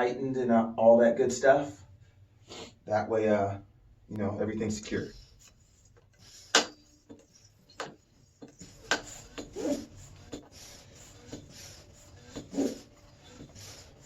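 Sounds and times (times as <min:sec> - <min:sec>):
pump rubbing squeak: 0:05.0 - 0:14.0.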